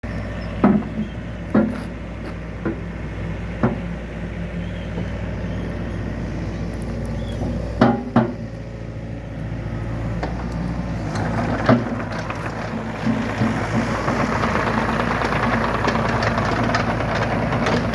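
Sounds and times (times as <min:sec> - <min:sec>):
excavator diesel engine running: 0:00.0 - 0:17.9
sharp knocks: 0:07.8 - 0:08.4.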